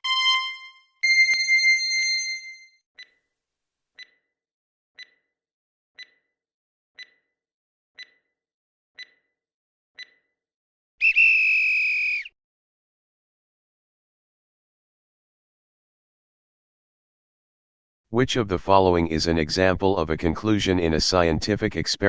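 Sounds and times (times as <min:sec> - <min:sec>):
pitched chime: 0:00.0 - 0:02.7
timer ticks: 0:03.0 - 0:03.2, 0:04.0 - 0:04.3, 0:05.0 - 0:05.4, 0:06.0 - 0:06.4, 0:07.0 - 0:07.4, 0:08.0 - 0:08.4, 0:09.0 - 0:09.4, 0:10.0 - 0:10.4.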